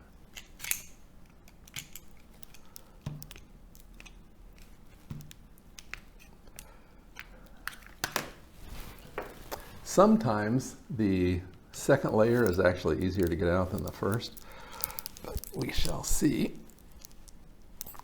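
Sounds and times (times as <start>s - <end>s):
pliers clicking and scraping metal: 0.1s - 8.2s, 11.8s - 18.0s.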